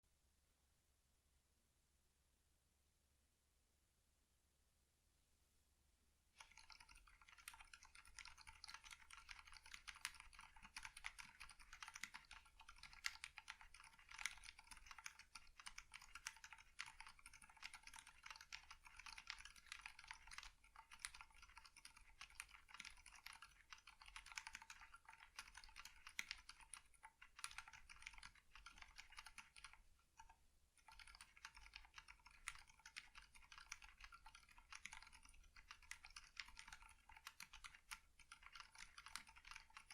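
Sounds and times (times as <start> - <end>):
quiet mechanical keyboard typing: 6.4 - 39.9.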